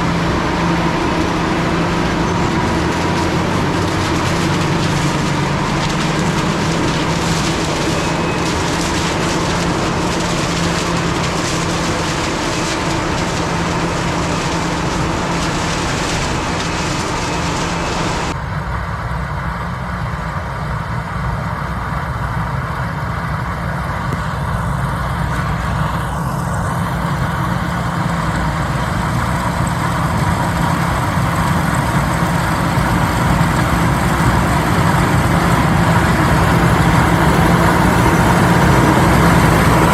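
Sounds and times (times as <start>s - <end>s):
high hiss: 0.0s - 18.4s
diesel engines humming: 0.0s - 39.9s.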